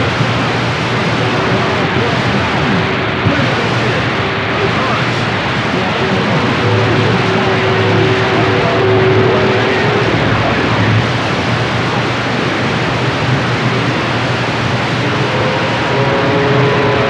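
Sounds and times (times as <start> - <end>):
radio static hiss: 0.0 - 17.0
steady whistle: 15.1 - 17.0.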